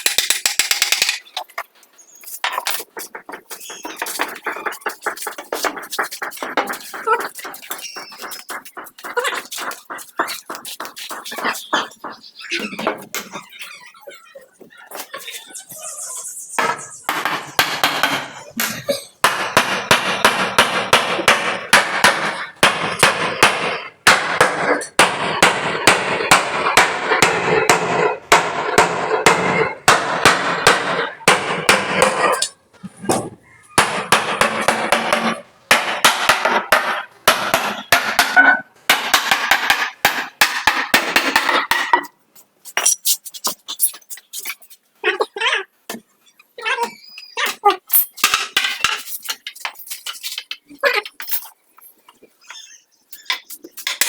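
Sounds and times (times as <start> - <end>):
hammer striking wooden frame: 16.6 - 18.4, 19.2 - 32.4, 33.1 - 41.9.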